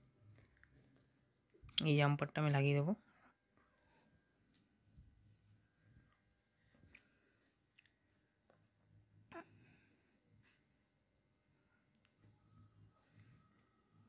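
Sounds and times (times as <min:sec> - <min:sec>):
cricket chirping: 0:00.0 - 0:14.0.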